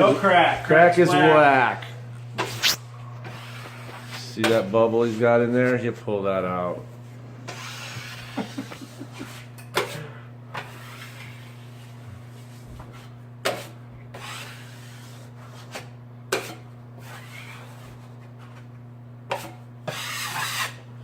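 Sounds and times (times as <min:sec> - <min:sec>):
steady low hum: 0:00.0 - 0:19.9
taping knife scraping compound: 0:02.4 - 0:04.7, 0:10.6 - 0:11.8, 0:13.0 - 0:18.1, 0:19.3 - 0:20.9.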